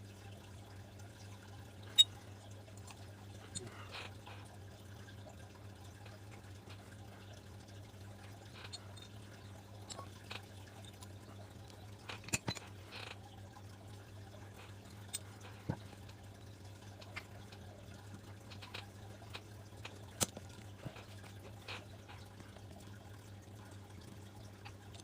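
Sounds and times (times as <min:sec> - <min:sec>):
steady low hum: 0:00.0 - 0:25.0
small metal parts clicking: 0:08.5 - 0:09.2, 0:11.7 - 0:13.2.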